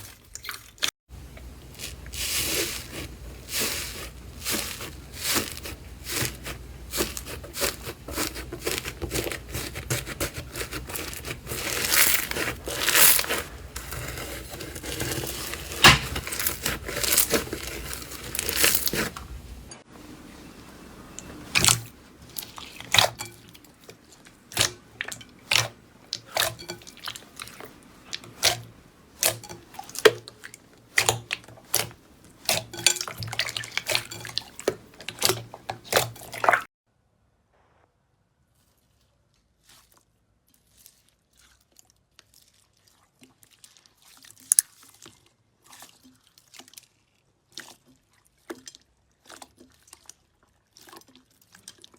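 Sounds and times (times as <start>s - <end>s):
slime crackling and popping: 0.4s - 19.5s.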